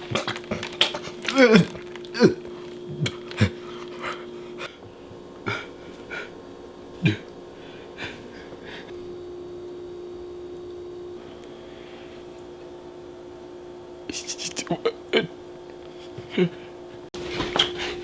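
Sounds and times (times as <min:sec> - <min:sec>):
faint steady hum: 0:00.0 - 0:18.0
person burping: 0:01.2 - 0:03.6, 0:07.0 - 0:07.3, 0:14.6 - 0:15.4
breaths: 0:07.5 - 0:09.0.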